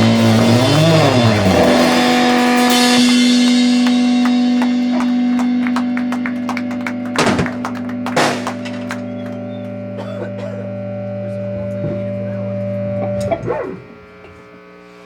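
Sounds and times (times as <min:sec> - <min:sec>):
amplifier hum: 0:00.0 - 0:15.0
electric guitar chord ringing: 0:00.0 - 0:15.0
guitar string scrape: 0:11.3 - 0:14.5.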